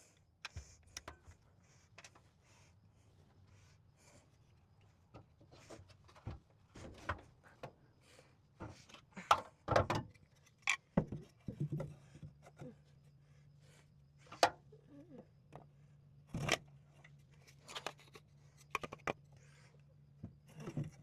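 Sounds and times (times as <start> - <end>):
wood and tools clattering: 8.6 - 12.7.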